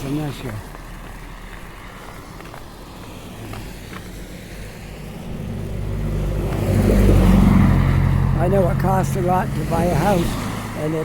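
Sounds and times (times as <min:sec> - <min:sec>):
vehicle approaching on road: 0:00.0 - 0:11.0.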